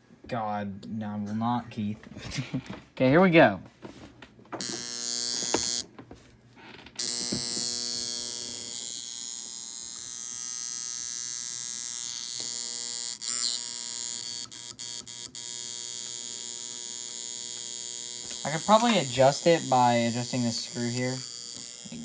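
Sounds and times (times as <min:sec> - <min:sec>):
electromechanical buzzer horn: 0:04.6 - 0:05.9, 0:07.0 - 0:22.0.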